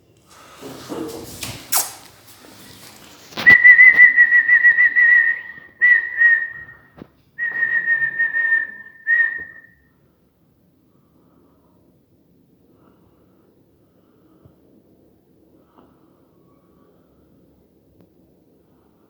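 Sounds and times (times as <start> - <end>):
person whistling high note: 3.4 - 9.8.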